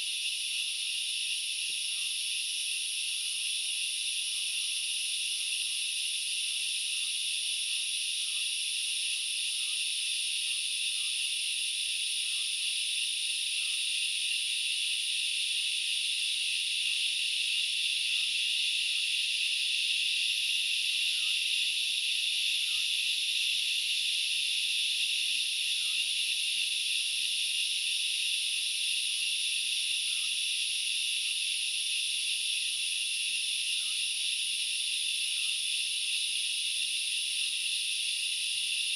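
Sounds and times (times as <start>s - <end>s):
faint short insect chirps: 0.0s - 38.9s.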